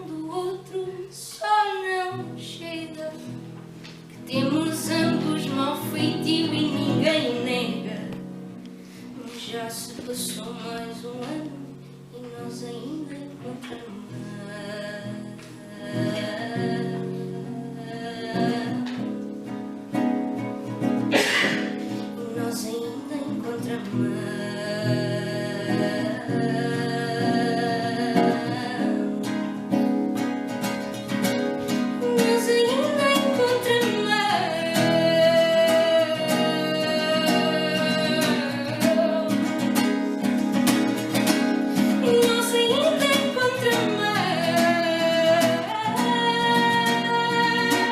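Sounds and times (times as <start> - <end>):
woman singing: 0.0 - 20.8, 21.5 - 47.9
acoustic guitar: 0.0 - 47.9.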